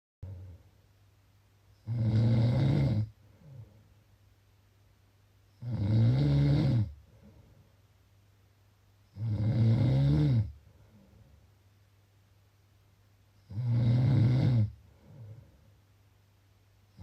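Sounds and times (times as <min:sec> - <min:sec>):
loud snoring: 0:01.8 - 0:03.6, 0:05.6 - 0:07.0, 0:09.1 - 0:10.6, 0:13.5 - 0:15.4.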